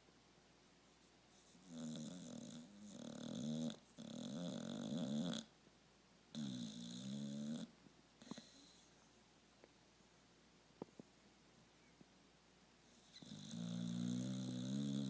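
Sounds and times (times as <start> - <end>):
pet snoring: 1.4 - 5.5, 6.3 - 8.9, 12.9 - 15.0.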